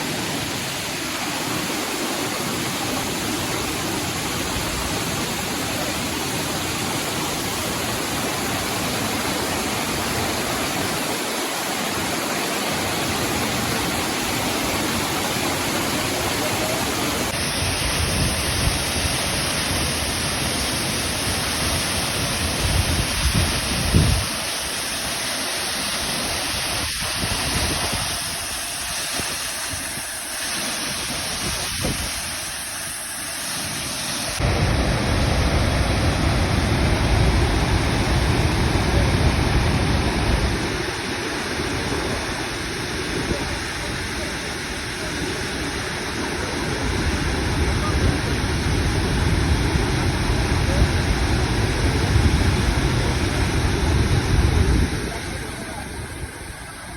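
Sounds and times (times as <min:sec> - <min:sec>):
waterfall roaring: 0:00.0 - 0:56.9
low rumbling gusts: 0:34.4 - 0:44.3, 0:46.0 - 0:56.9.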